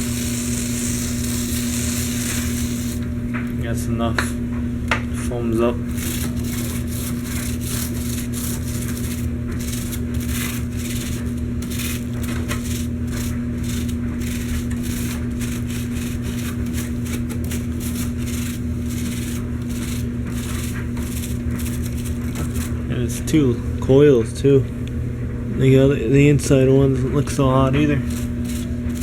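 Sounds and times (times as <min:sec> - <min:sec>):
foam cleaner crackling and fizzing: 0:00.0 - 0:03.7, 0:05.6 - 0:23.2, 0:27.6 - 0:29.0
steady low hum: 0:00.0 - 0:29.0.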